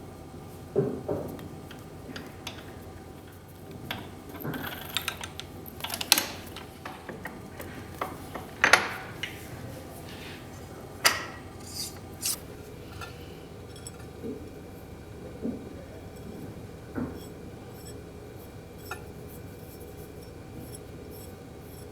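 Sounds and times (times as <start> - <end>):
faint steady hum: 0.0 - 21.9
metallic clicks and scrapes of tools: 11.6 - 14.1.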